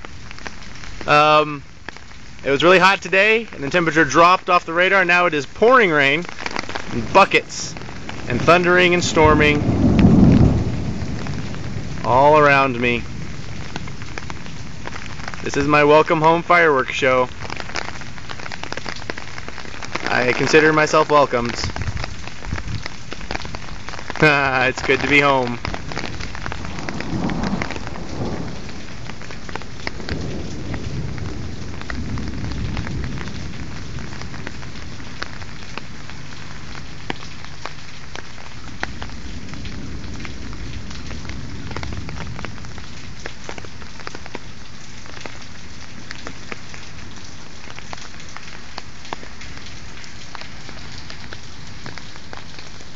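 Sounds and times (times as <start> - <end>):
heavy rain pouring: 0.0 - 52.9
rain drop ticks: 0.0 - 52.9
low rolling thunder: 2.6 - 44.6.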